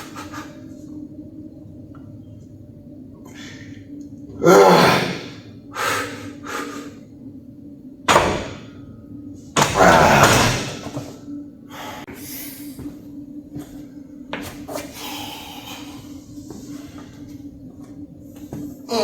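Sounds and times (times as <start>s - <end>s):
steady low hum: 0.0s - 19.0s
heavy breathing: 4.5s - 7.1s, 11.7s - 13.0s, 14.7s - 17.4s.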